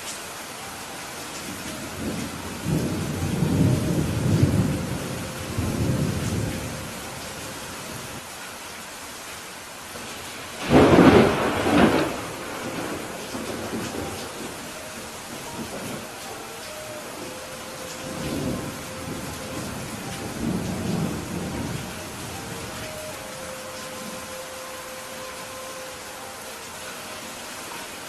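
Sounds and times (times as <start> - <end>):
steady rain hiss: 0.0 - 28.0
thunder rumbling: 1.9 - 7.2, 10.5 - 24.4.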